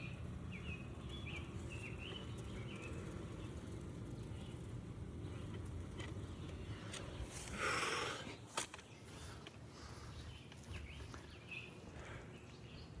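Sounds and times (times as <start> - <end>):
bird chirps: 0.0 - 5.5, 10.0 - 13.0
honeybees humming: 0.0 - 12.9.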